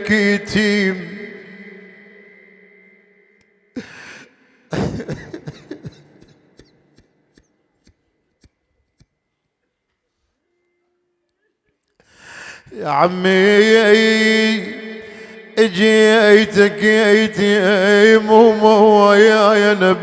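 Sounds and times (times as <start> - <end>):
man clearing his throat: 3.8 - 7.1
man coughing: 3.8 - 7.1.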